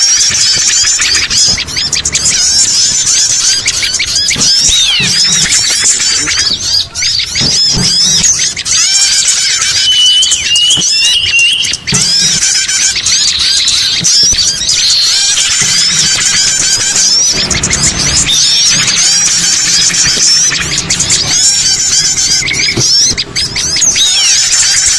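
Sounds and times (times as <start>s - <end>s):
songbirds chirping and twittering: 0.0s - 24.9s
short repeated whistles: 7.0s - 19.1s.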